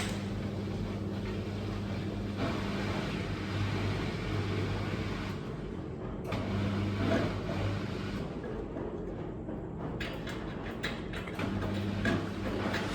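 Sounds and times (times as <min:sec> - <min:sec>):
washing machine running: 0:00.0 - 0:10.1, 0:10.7 - 0:12.9.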